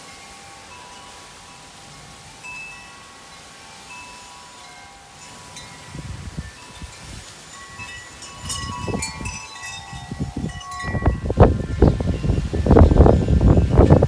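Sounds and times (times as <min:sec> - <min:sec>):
wind chimes jangling: 0:00.0 - 0:14.0
wind gusts buffeting microphone: 0:05.6 - 0:14.0.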